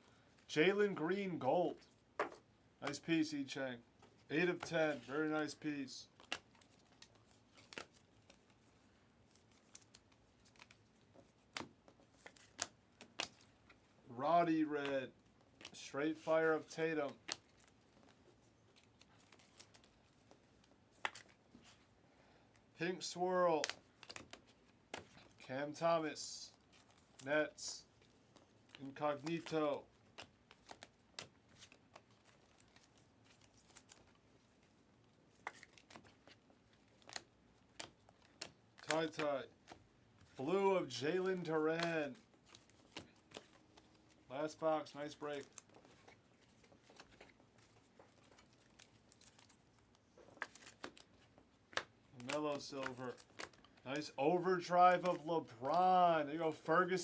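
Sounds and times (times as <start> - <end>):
trading cards clicking and rustling: 2.2 - 3.4, 4.0 - 21.8, 23.0 - 57.0
trading cards flicking and clicking: 37.0 - 39.8, 41.2 - 43.9, 50.2 - 56.2.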